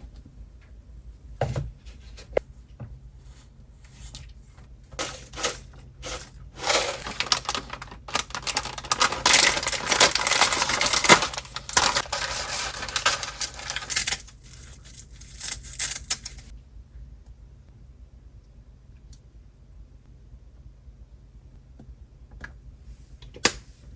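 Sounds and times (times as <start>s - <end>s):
rustling: 3.2s - 16.5s
kitchen clatter: 4.9s - 16.5s
kitchen utensils clicking: 4.9s - 16.5s.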